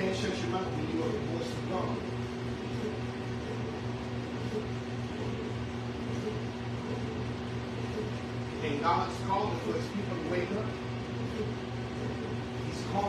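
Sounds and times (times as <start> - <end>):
faint regular pulsing: 0.0 - 13.0
steady low hum: 0.0 - 13.0.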